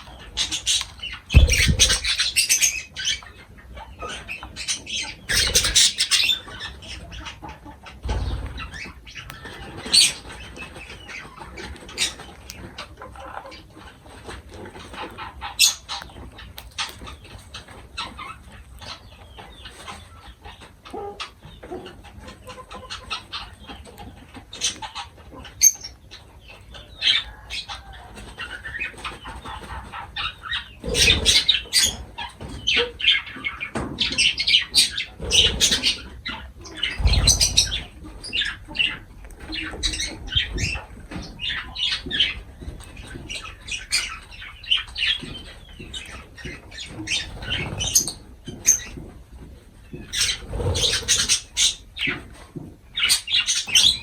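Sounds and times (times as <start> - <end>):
birds chirping and squawking: 0.0 - 54.0
wings flapping: 0.4 - 2.5, 36.8 - 44.2, 49.9 - 52.3.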